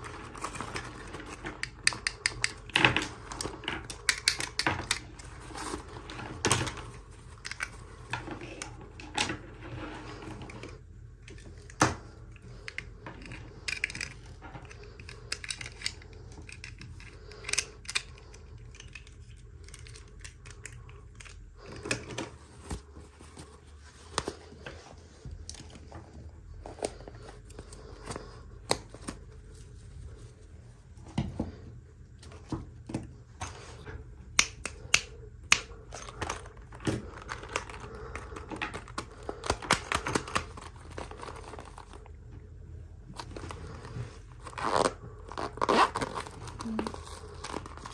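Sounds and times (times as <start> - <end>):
plastic pieces clicking and tapping: 0.4 - 5.3, 11.2 - 22.2
packaging rustling: 35.9 - 42.2, 43.1 - 47.9.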